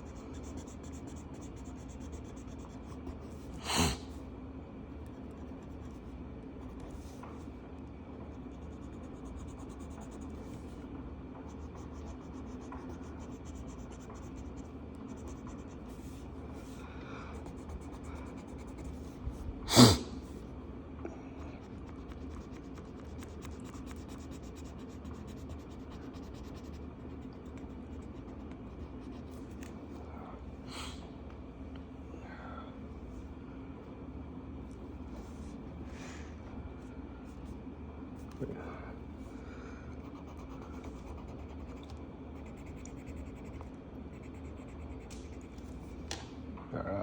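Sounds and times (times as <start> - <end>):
marker rubbing on paper: 0.0 - 3.8, 8.4 - 10.7, 11.5 - 16.8, 17.4 - 19.2, 21.7 - 29.6
steady low hum: 0.0 - 47.0.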